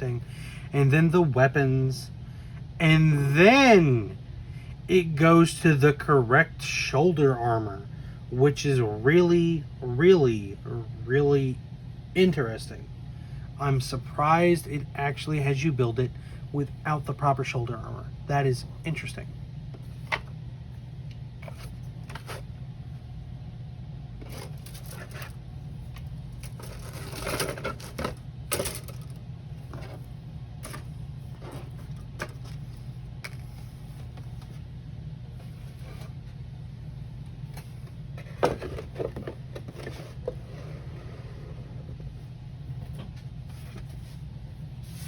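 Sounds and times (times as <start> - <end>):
steady low hum: 0.0 - 45.0
paper or plastic rustling: 24.2 - 25.4, 26.4 - 34.5.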